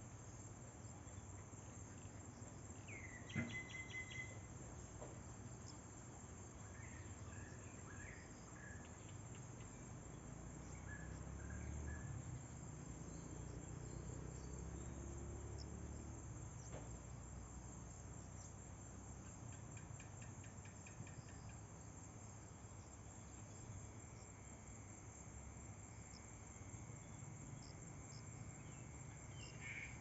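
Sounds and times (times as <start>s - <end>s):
insects chirping: 0.0s - 30.0s
faint low rumble: 4.4s - 19.8s
rapid ticks: 19.2s - 21.6s.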